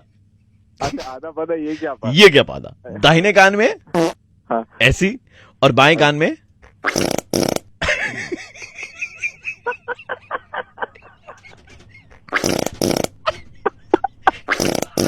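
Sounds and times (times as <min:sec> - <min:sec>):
farting: 0:03.9 - 0:04.2, 0:06.6 - 0:07.7, 0:12.3 - 0:13.2, 0:14.5 - 0:15.0.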